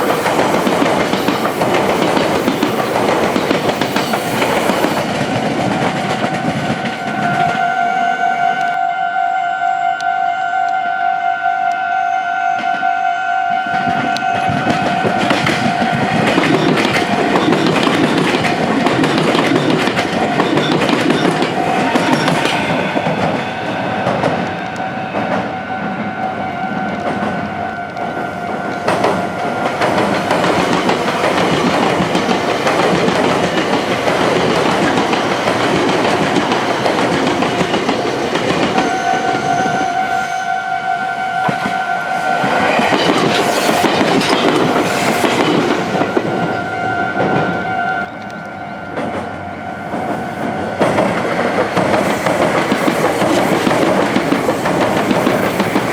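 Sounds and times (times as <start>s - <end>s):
train wheels clacking over rails: 0.0s - 7.7s, 13.7s - 40.3s, 41.4s - 47.7s, 48.9s - 55.9s
level crossing warning bell: 16.2s - 27.5s.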